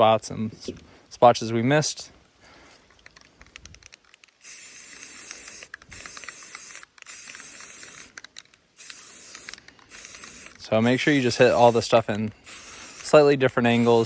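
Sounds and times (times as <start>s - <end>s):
spray can ticking: 2.9s - 14.0s
spray paint can spraying: 3.6s - 14.0s.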